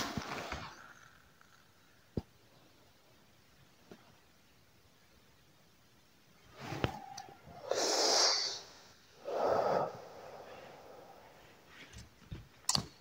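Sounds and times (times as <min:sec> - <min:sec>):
hissing inhale of smoke: 0:06.5 - 0:12.0
breathy puff exhaling: 0:07.6 - 0:11.9
faint small clicks: 0:12.0 - 0:13.0.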